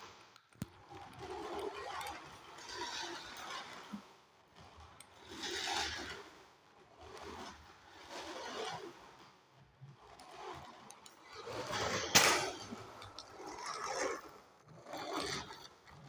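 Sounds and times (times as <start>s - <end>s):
toy car motor whirring: 10.0s - 16.0s.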